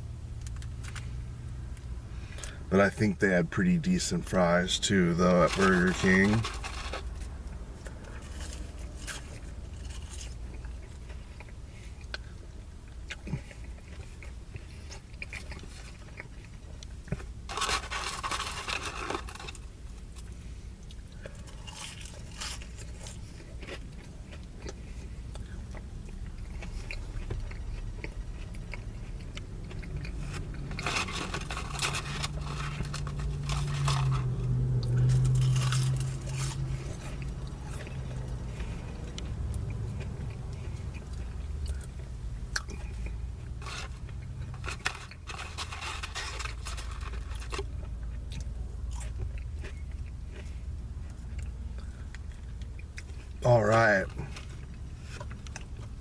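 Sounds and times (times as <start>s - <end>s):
chewing and crunching fries: 0.0s - 56.0s
paper packaging rustling: 5.2s - 7.3s, 17.5s - 19.6s, 30.8s - 34.3s, 44.5s - 47.7s.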